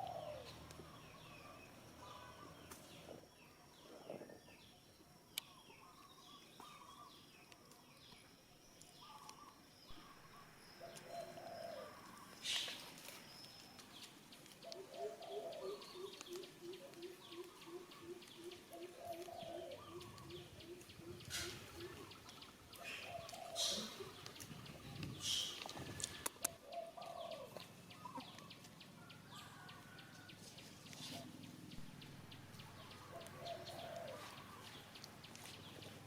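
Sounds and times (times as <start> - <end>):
low hooting bird notes: 9.0 - 12.9
short bird calls: 10.8 - 13.0, 22.8 - 24.2, 25.1 - 26.2.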